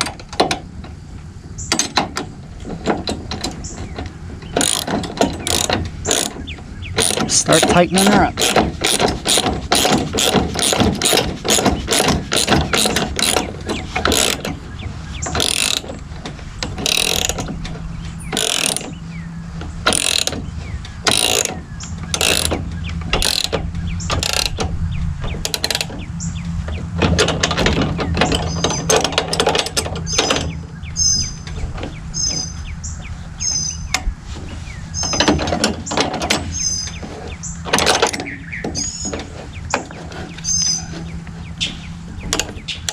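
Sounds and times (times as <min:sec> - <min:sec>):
socket ratchet clicking: 0:04.6 - 0:06.4, 0:07.0 - 0:14.5, 0:15.3 - 0:16.0, 0:16.8 - 0:17.5, 0:18.4 - 0:19.0, 0:19.9 - 0:20.4, 0:21.1 - 0:22.6, 0:23.2 - 0:24.7, 0:25.4 - 0:25.9.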